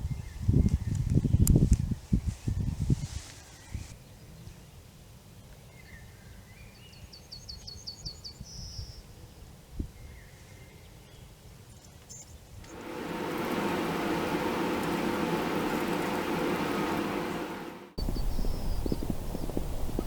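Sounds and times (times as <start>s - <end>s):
low steady rumble: 12.7s - 20.0s
songbird singing: 18.0s - 20.0s.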